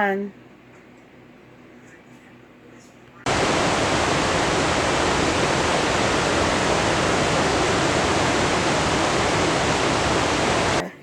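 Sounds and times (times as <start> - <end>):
loud steady rushing noise: 3.3 - 10.8.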